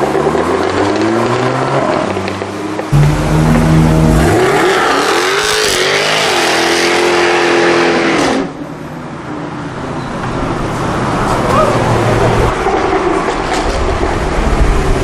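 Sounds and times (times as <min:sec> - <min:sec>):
car engine revving hard: 0:03.0 - 0:08.2.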